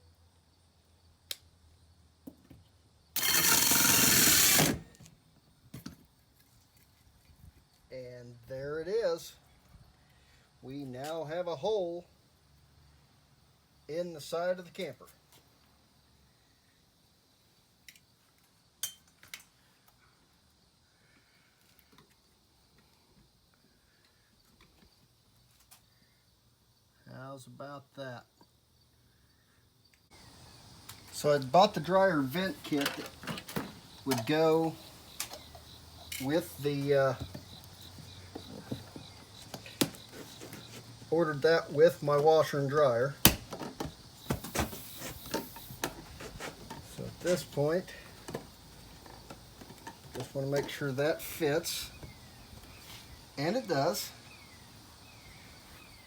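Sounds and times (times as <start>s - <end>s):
power drill cutting fiberglass: 3.2s - 5.0s
small knocks: 37.1s - 41.0s.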